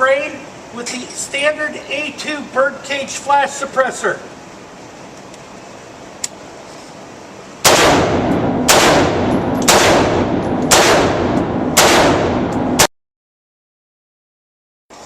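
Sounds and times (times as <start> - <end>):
rifle shots echoing: 7.6 - 12.9.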